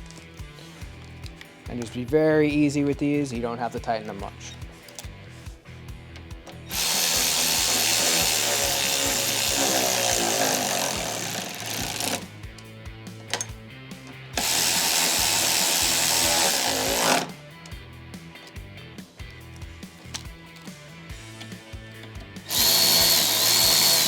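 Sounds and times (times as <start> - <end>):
cordless drill driving bolts: 6.5 - 12.3, 14.4 - 17.4, 21.4 - 24.0.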